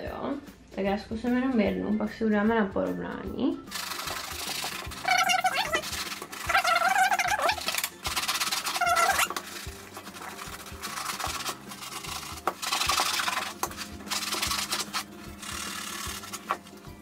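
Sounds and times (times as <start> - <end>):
sponge scrubbing a leather sneaker: 3.8 - 16.6.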